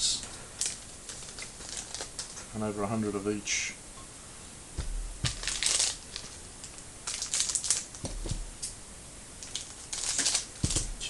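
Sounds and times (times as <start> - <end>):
card pack wrappers crinkling: 0.6 - 2.4, 5.2 - 8.4, 9.4 - 11.0
soft bumps: 4.7 - 5.6, 8.0 - 8.5, 10.6 - 11.0.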